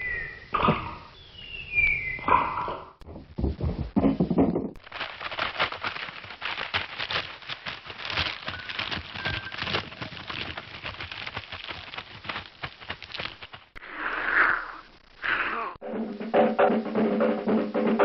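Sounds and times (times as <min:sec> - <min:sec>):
cartoon crackling and crunching: 0:04.8 - 0:15.4.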